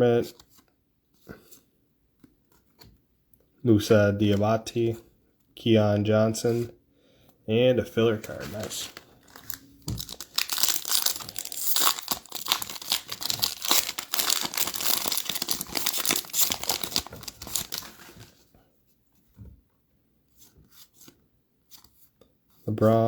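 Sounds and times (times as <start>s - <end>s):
plastic wrapper crinkling: 8.4s - 18.3s.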